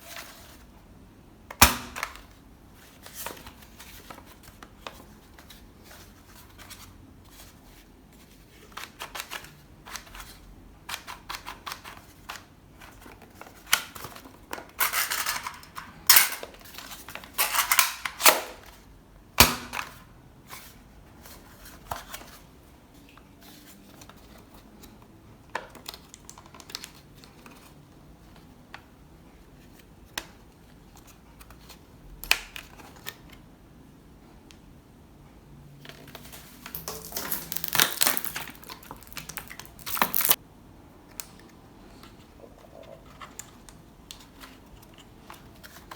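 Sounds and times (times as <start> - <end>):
packaging rustling: 35.9 - 40.4
plastic parts clicking: 36.7 - 40.4.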